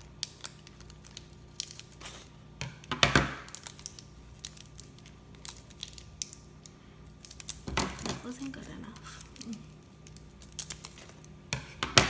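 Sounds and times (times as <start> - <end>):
plastic packaging crinkling: 0.0 - 2.3, 3.3 - 12.0
packaging rustle: 7.2 - 11.4.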